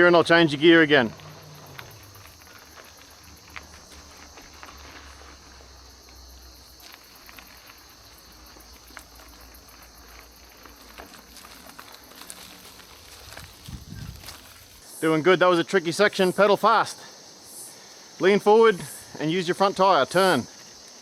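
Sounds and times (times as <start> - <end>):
insects chirring: 0.0 - 21.0.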